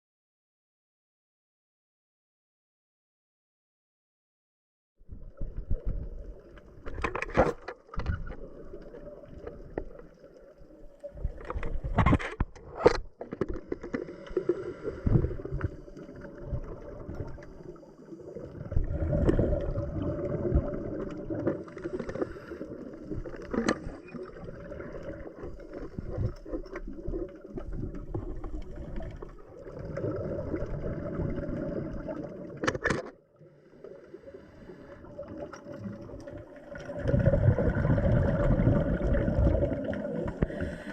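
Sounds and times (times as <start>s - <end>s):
diver exhaling bubbles underwater: 14.1s - 32.6s, 34.3s - 40.9s.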